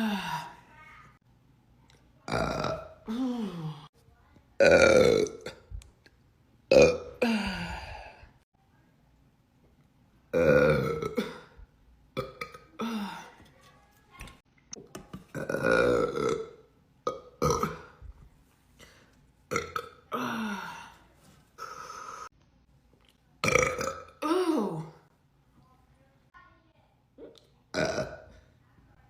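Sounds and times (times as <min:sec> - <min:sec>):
young women burping: 0:02.3 - 0:03.9, 0:04.6 - 0:05.7, 0:06.7 - 0:08.2, 0:10.3 - 0:13.4, 0:15.3 - 0:18.0, 0:19.5 - 0:21.0, 0:23.4 - 0:25.0, 0:27.2 - 0:28.5.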